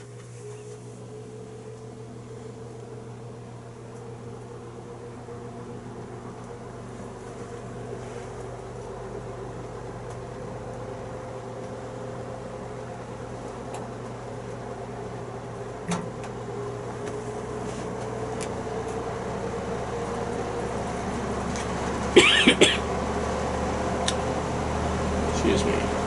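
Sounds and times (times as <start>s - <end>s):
fan click: 0.0s - 2.0s, 3.8s - 4.2s, 6.0s - 6.6s, 13.4s - 14.6s, 15.8s - 19.1s, 20.3s - 22.1s, 24.0s - 24.4s
box fan motor humming: 0.0s - 26.0s.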